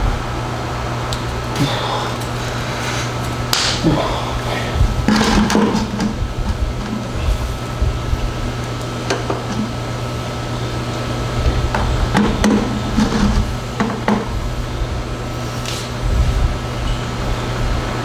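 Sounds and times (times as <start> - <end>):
steady low hum: 0.0 - 18.0
hand tools clicking and knocking: 5.0 - 7.3, 8.6 - 9.8, 11.7 - 14.3.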